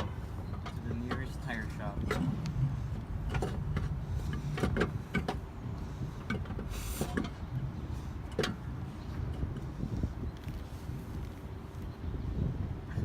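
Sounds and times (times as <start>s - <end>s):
low steady rumble: 0.0s - 13.0s
metallic clicks and knocks: 3.2s - 5.5s.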